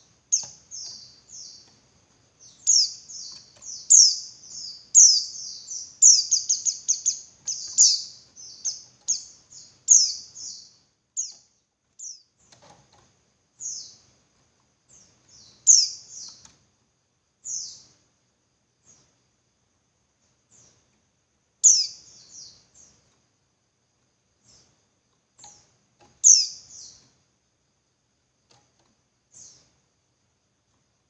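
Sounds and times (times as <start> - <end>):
bird chirping high and thin: 2.4 - 11.4, 15.4 - 16.4, 21.6 - 22.6, 26.2 - 27.0.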